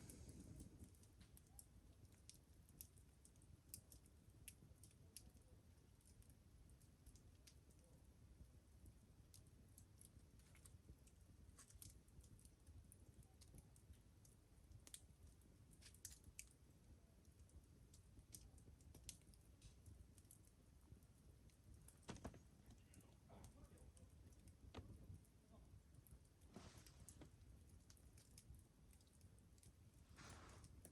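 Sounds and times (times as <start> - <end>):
campfire crackling: 0.0 - 30.9
fire pops: 21.9 - 22.8.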